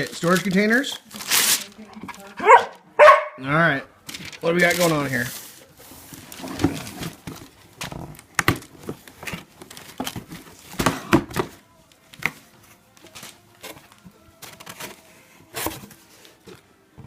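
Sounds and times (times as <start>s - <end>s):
gift wrap crinkling: 0.0s - 2.8s, 4.0s - 10.6s.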